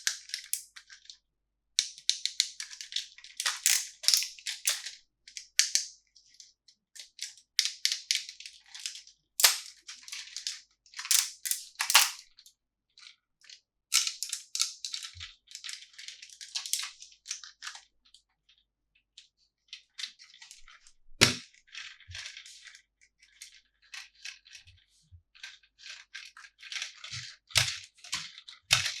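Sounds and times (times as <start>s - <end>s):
toy pieces clicking: 3.4s - 4.9s, 9.4s - 9.7s, 11.0s - 12.2s
sharp knock: 21.2s - 21.4s.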